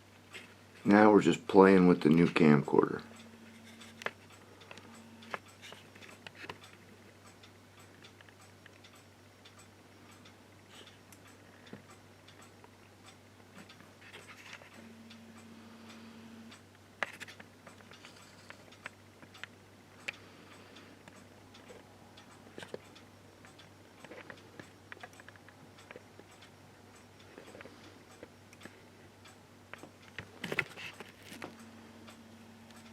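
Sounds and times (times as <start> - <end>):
soft regular ticking: 0.2 - 32.9
low hum: 2.8 - 5.6, 14.6 - 16.6, 31.4 - 32.9.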